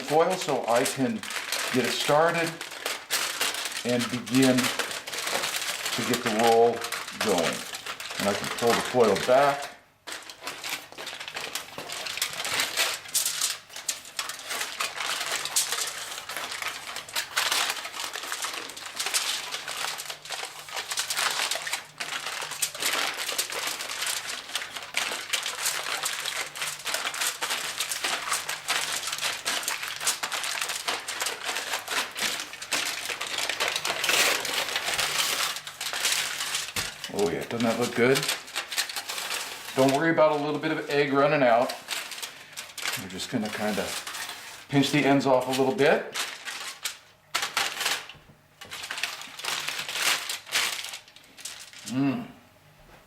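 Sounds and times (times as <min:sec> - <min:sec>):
aluminum foil crinkling: 0:00.0 - 0:52.2.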